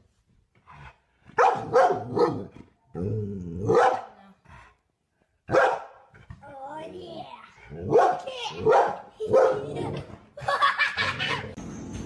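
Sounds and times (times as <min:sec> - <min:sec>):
dog barking: 0:01.4 - 0:02.5, 0:03.7 - 0:04.2, 0:05.5 - 0:06.1, 0:07.8 - 0:09.8.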